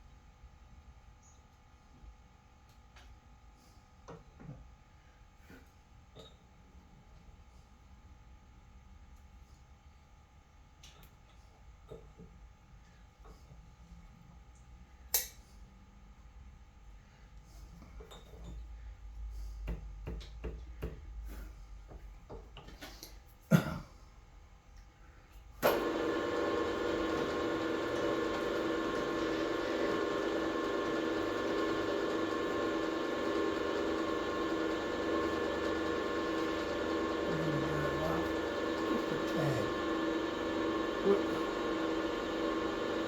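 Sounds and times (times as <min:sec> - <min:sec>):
lathe motor humming: 0:25.6 - 0:43.0.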